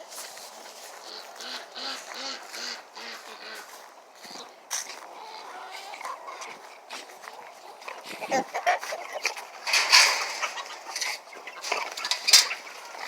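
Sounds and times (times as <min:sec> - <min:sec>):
chickens clucking: 0:00.1 - 0:13.0.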